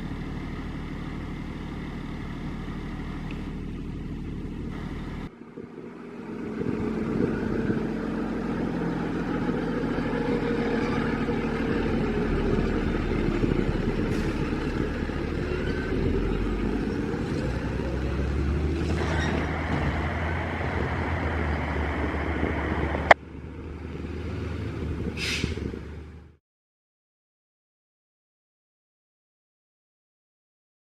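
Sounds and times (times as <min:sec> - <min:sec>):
vehicle engine running: 0:00.0 - 0:26.4.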